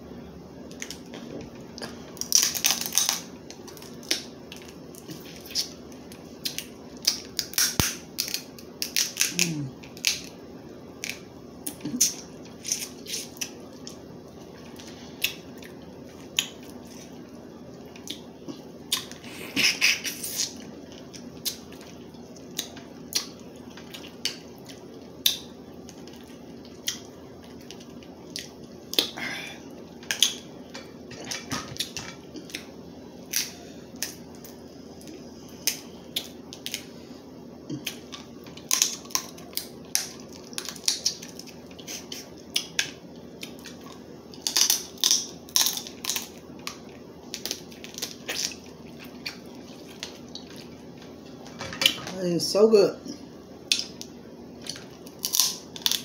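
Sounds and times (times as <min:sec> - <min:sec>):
crab shells cracking: 0:02.2 - 0:05.8, 0:06.4 - 0:10.4, 0:37.8 - 0:50.6, 0:53.7 - 0:56.0.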